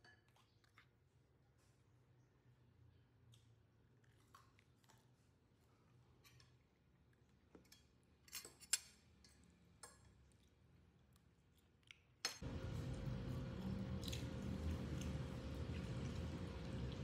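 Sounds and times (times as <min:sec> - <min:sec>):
machine whirring and humming: 0:12.4 - 0:17.0.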